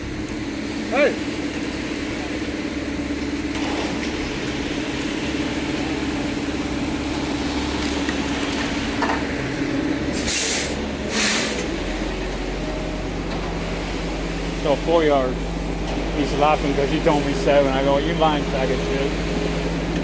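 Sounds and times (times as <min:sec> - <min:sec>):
concrete mixer truck running: 0:00.0 - 0:20.0
loud air hisses: 0:10.1 - 0:11.8.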